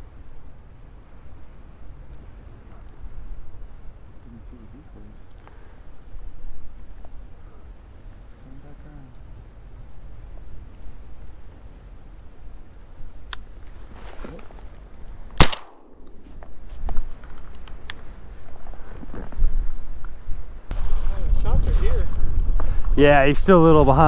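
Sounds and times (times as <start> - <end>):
shotgun shot: 15.4 - 16.2.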